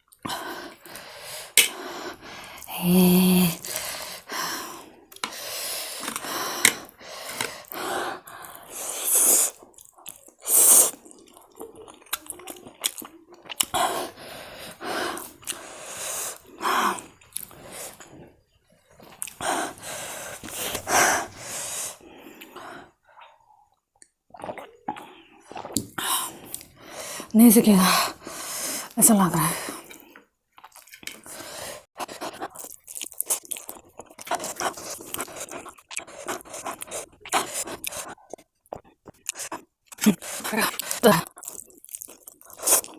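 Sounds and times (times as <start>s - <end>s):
person chewing noodles: 0.0s - 27.3s, 29.6s - 42.9s
heavy breathing: 0.3s - 9.0s, 19.4s - 23.0s.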